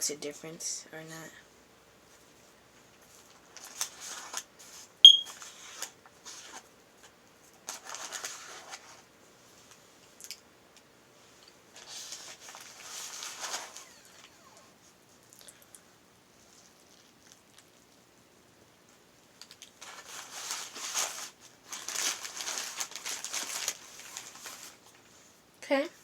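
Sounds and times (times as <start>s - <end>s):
wrapper paper crinkling: 3.2s - 4.5s, 7.6s - 9.0s, 19.5s - 25.0s
sharp high squeak: 5.1s - 5.3s.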